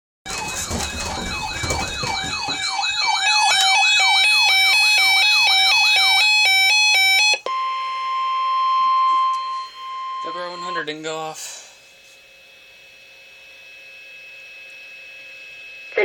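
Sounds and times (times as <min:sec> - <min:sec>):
electronic siren sweeping: 0:00.3 - 0:07.8.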